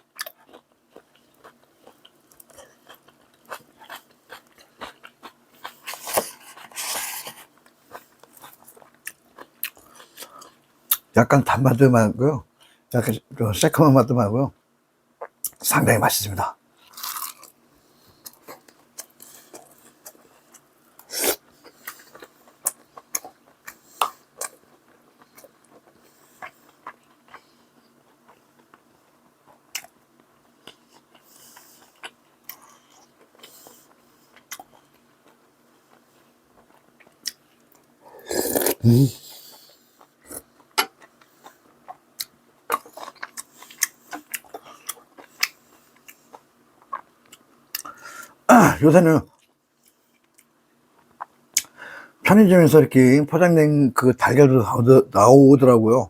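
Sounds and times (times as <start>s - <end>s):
person chewing and crunching food: 0.0s - 11.1s, 16.8s - 51.8s
throat sound: 38.1s - 39.3s.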